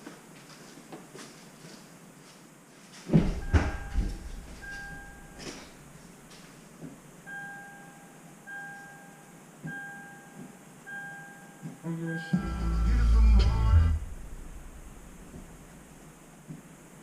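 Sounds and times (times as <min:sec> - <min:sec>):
heavy thuds: 0:03.1 - 0:06.2, 0:13.4 - 0:16.7
car cabin chime beeping: 0:03.4 - 0:05.4, 0:07.3 - 0:12.7.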